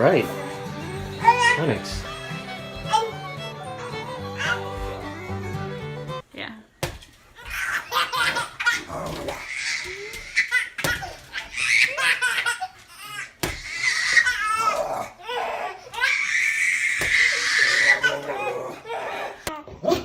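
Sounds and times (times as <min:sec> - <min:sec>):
baby laughing: 0:00.4 - 0:05.9, 0:07.4 - 0:16.4.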